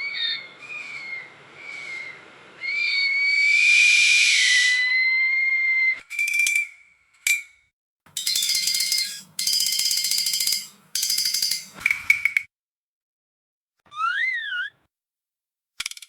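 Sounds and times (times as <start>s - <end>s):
metal gate hinges squealing: 8.2s - 11.8s.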